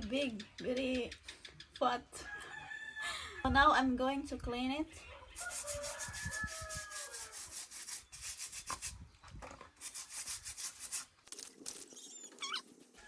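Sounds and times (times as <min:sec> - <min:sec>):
rooster crowing: 0:02.3 - 0:03.4, 0:05.4 - 0:07.4
cassava root being scraped: 0:05.4 - 0:09.0, 0:09.8 - 0:13.0.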